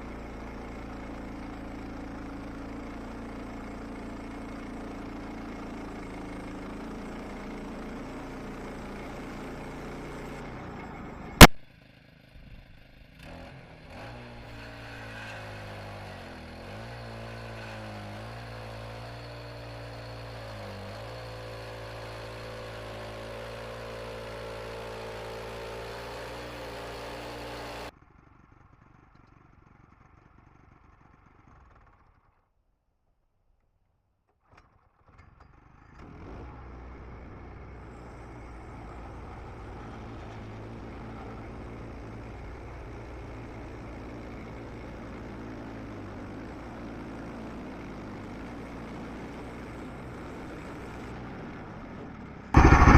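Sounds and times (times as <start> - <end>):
sharp loud click: 11.4 - 11.6, 52.6 - 52.9
engine humming: 52.6 - 52.9.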